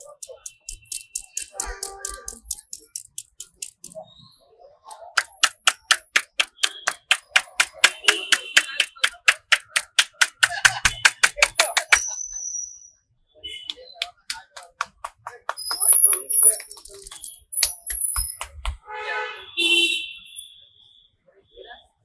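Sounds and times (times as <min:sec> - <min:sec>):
hands tapping on head: 0:05.2 - 0:12.2, 0:13.7 - 0:18.8.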